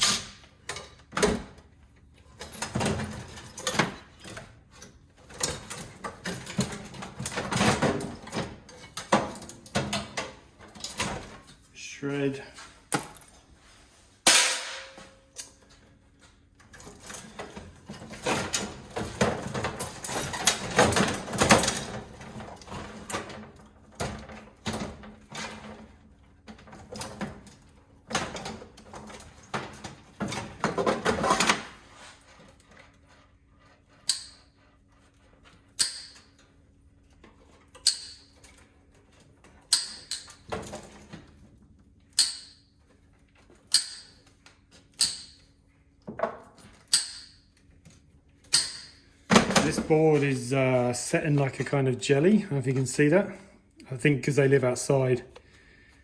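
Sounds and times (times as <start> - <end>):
metal parts clattering and scraping: 16.7 - 23.2
wire snips cutting wires: 35.8 - 36.3.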